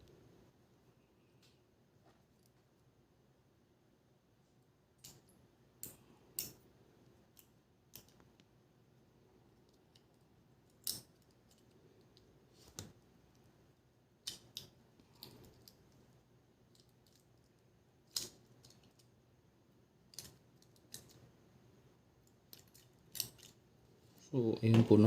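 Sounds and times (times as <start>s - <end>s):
small tools clicking and tapping: 7.3s - 8.4s, 22.2s - 23.6s.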